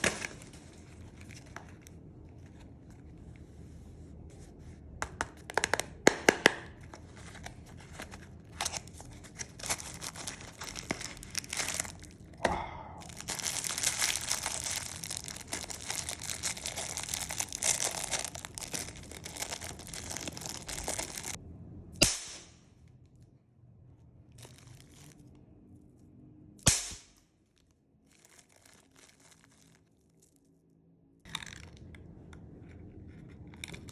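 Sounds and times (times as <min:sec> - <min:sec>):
crinkling paper: 0:00.0 - 0:04.7, 0:05.6 - 0:12.4, 0:13.0 - 0:21.4, 0:24.3 - 0:25.4, 0:27.5 - 0:30.7, 0:31.3 - 0:33.9
bang snaps cracking: 0:22.0 - 0:22.6, 0:26.7 - 0:27.2.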